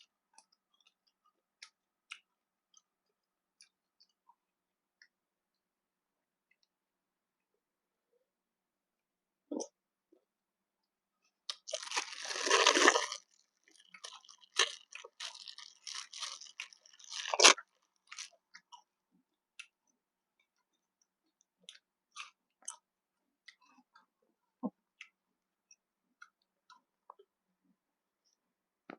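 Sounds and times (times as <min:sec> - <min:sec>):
crunching bite: 0:11.5 - 0:18.3
chewing with mouth sounds: 0:11.5 - 0:18.9.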